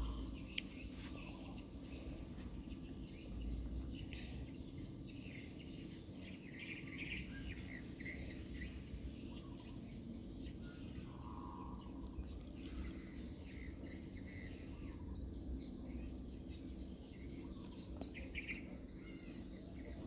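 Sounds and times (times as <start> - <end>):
insects: 0.0 - 20.0.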